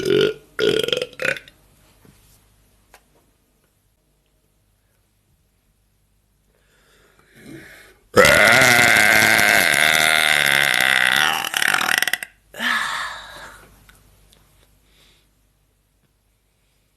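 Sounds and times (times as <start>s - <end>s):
woman burping: 0.0s - 1.5s, 8.2s - 12.8s.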